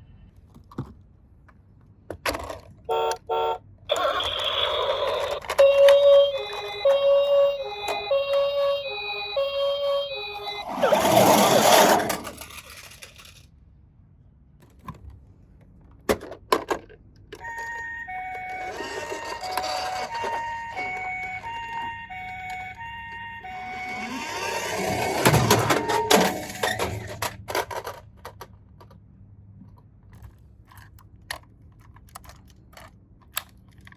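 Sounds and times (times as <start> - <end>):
two-tone ambulance siren: 2.9 - 12.4, 17.4 - 27.2
toy cars rattling down plastic slide: 3.9 - 13.5, 17.5 - 22.7, 23.5 - 28.6.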